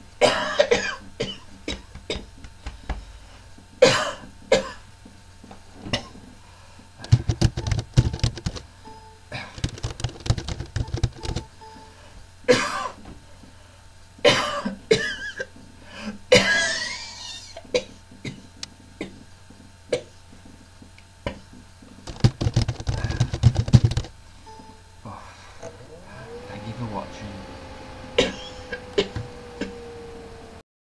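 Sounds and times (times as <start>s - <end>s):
man coughing: 0.2s - 1.4s, 3.8s - 4.8s, 12.5s - 13.0s, 14.3s - 15.5s, 16.3s - 19.2s, 28.2s - 29.2s.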